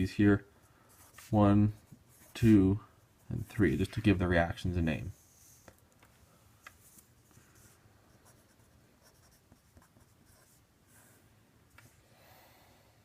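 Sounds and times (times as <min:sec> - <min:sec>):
pen scratching on paper: 0:07.6 - 0:11.2.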